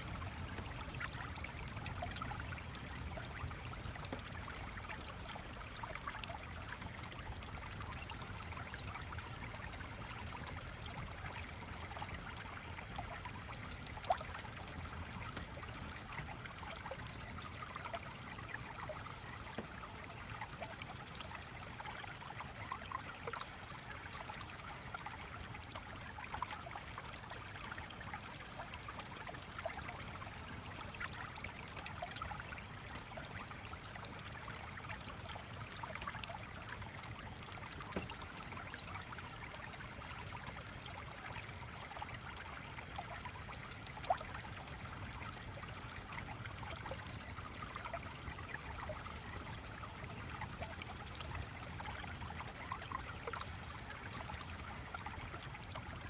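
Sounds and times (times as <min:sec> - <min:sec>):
stream trickling and babbling: 0:00.0 - 0:56.0.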